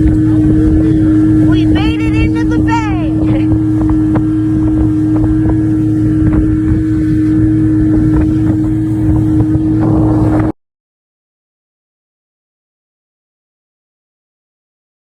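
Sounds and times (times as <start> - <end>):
motorboat engine running: 0.0 - 10.6
wind buffeting microphone: 0.0 - 10.6.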